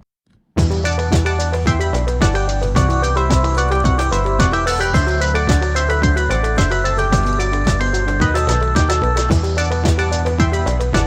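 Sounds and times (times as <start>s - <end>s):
upbeat electronic music: 0.6s - 11.0s.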